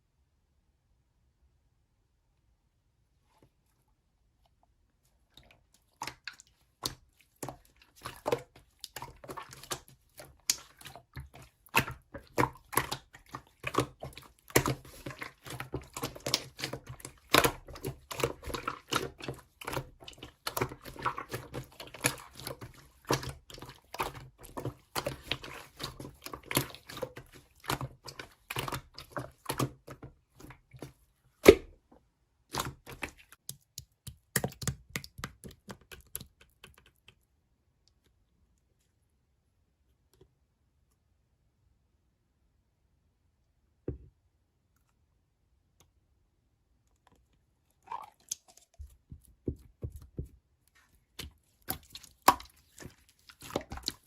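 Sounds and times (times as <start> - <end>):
slime squished by hand: 5.4 - 31.8, 50.9 - 54.0.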